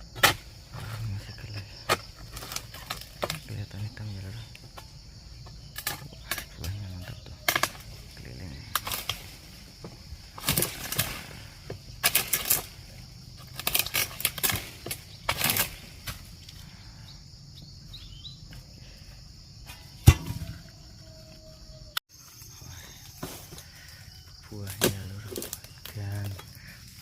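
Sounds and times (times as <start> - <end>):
fronds rustling and swishing: 7.7 - 16.6
heavy thud: 20.0 - 20.7.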